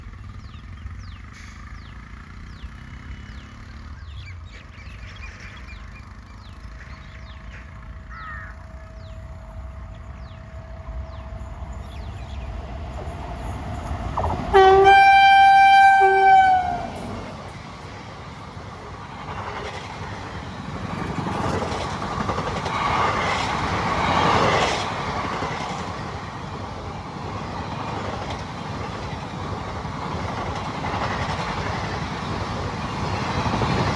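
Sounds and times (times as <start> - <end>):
train wheels rumbling on rails: 0.0 - 33.9
locomotive horn blast: 14.2 - 17.4.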